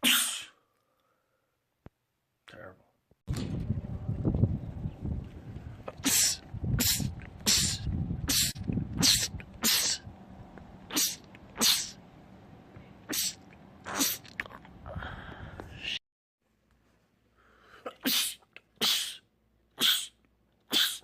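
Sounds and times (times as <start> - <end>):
man sneezing rapidly: 0.0 - 0.6, 6.0 - 10.0, 10.9 - 12.0, 13.1 - 14.3, 17.8 - 19.2, 19.8 - 21.0.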